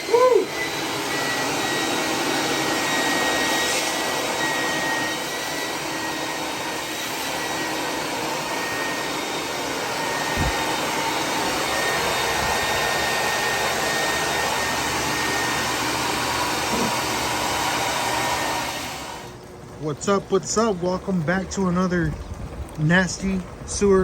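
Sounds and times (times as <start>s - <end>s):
motor running with air rush: 0.0s - 24.0s.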